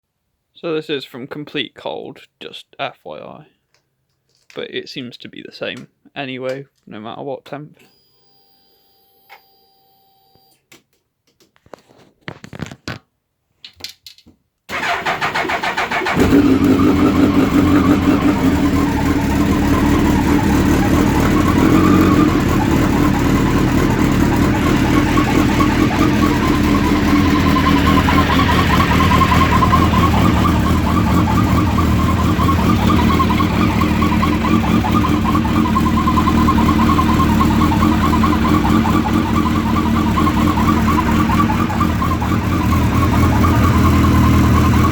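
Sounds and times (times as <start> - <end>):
engine whirring: 14.7 - 44.9
motorcycle engine idling: 14.7 - 44.9
starter cranking: 14.7 - 44.9.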